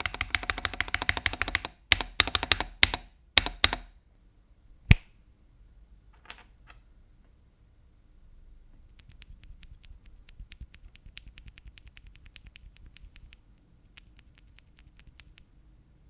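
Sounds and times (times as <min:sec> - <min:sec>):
typing on mechanical keyboard: 0:00.0 - 0:03.9, 0:09.0 - 0:15.5.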